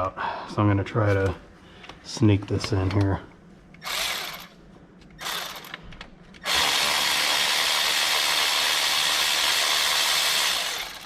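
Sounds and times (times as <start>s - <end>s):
cordless power tool running: 3.8s - 4.6s, 5.2s - 5.8s, 6.4s - 11.0s.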